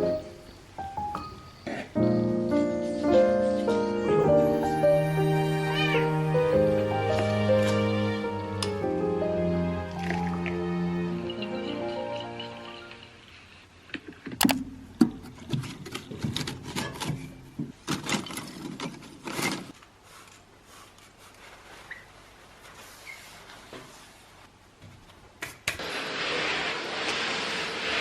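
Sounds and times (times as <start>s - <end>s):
objects knocking and clattering: 14.0s - 19.8s.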